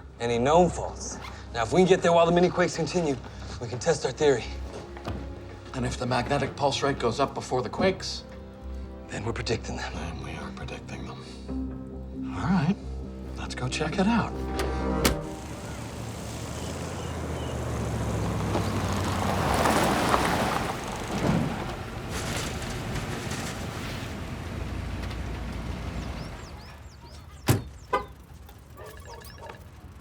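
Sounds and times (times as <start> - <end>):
vehicle passing: 14.3 - 27.0.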